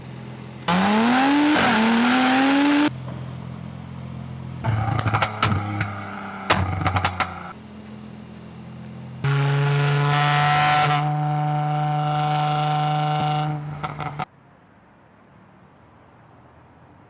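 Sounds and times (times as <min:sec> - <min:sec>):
car engine revving: 0:00.0 - 0:14.3
exhaust pops and crackles: 0:04.4 - 0:14.3.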